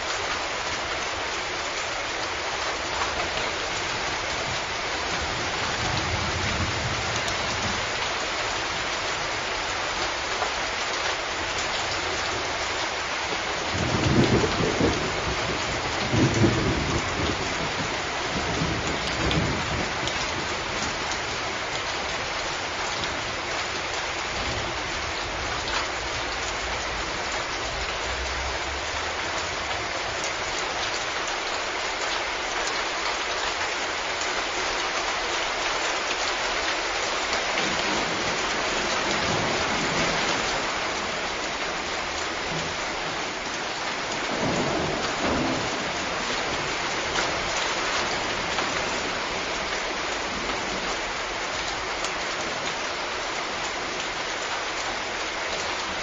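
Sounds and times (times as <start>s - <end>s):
rain pouring: 0.0s - 56.0s
thunder rumbling: 13.7s - 20.5s, 37.6s - 41.2s, 44.2s - 49.5s.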